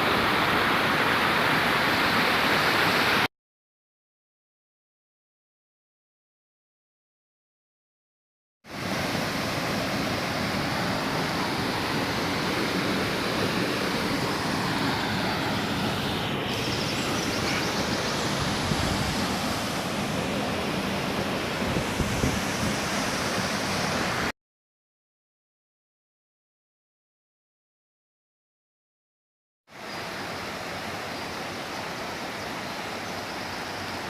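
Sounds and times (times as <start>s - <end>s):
waterfall rushing: 0.0s - 3.3s, 8.7s - 24.3s.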